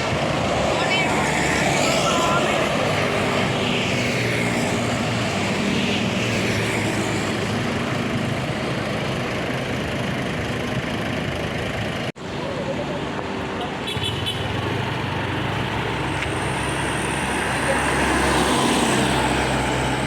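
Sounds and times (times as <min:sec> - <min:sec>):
tyre and road noise: 0:00.0 - 0:20.0
diesel engine humming: 0:06.8 - 0:20.0.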